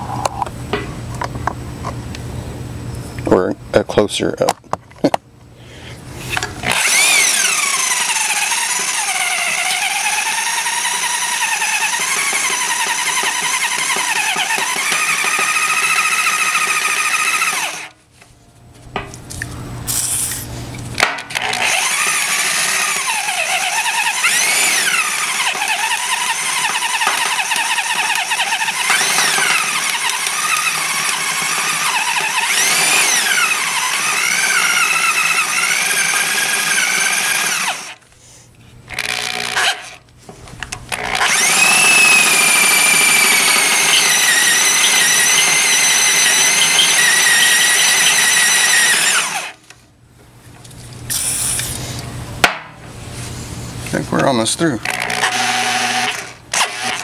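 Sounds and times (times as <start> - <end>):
cordless drill drilling into steel: 6.6 - 18.0, 21.4 - 38.0, 40.9 - 49.6, 54.8 - 57.0.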